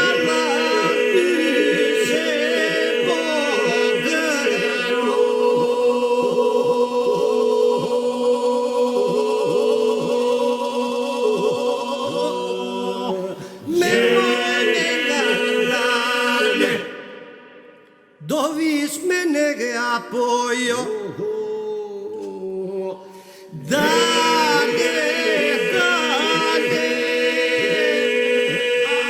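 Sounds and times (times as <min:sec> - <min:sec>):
held vocal drone: 0:00.0 - 0:17.8, 0:23.7 - 0:29.0
group singing a cappella: 0:00.0 - 0:29.0.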